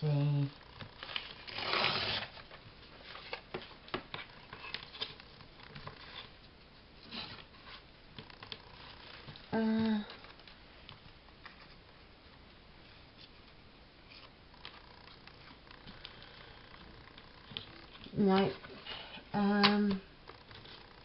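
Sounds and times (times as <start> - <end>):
paper rustling and crinkling: 0.9 - 6.4.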